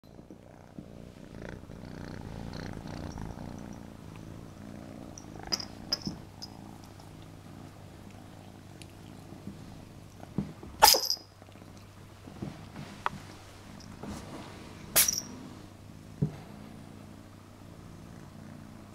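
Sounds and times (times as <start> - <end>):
kitten purring: 0.0 - 10.4, 11.4 - 18.9
kitten sneezing: 10.8 - 11.1, 15.0 - 15.2.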